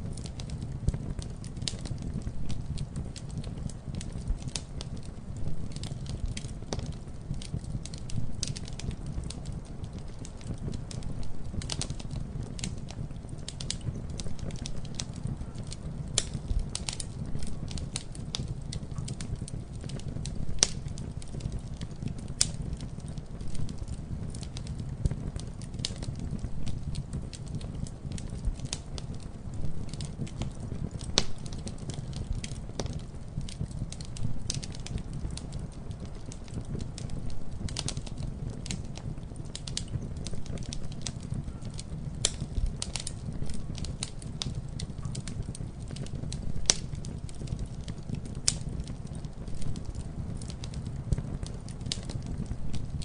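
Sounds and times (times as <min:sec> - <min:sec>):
burning wood crackling and popping: 0:00.0 - 0:53.0
campfire flames rumbling: 0:00.0 - 0:53.0.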